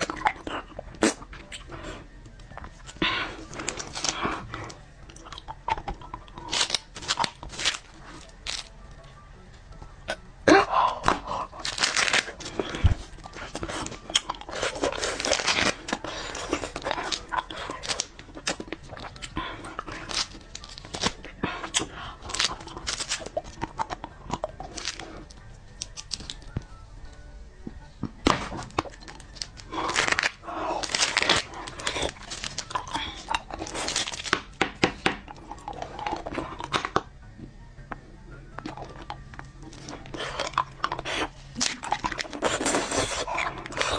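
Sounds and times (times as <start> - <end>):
background music: 0.0 - 43.9
wrappers crinkling and tearing: 3.4 - 4.3, 6.4 - 8.7, 11.2 - 23.8, 24.6 - 26.5, 28.7 - 34.6, 39.6 - 43.9
mouth sounds of eating: 38.6 - 43.9.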